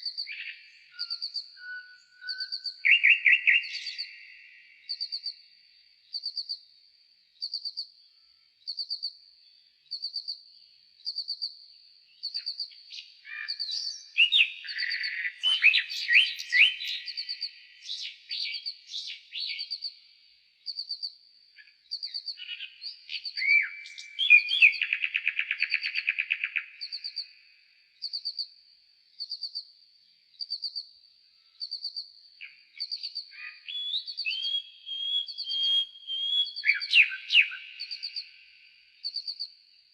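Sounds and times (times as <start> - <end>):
whistled bird phrases: 0.0 - 5.4, 12.3 - 19.9, 22.0 - 27.3, 32.4 - 39.4.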